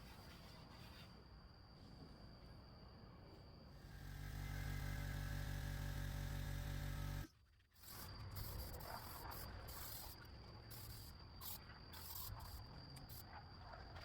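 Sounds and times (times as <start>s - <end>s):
motor humming: 3.8s - 7.3s.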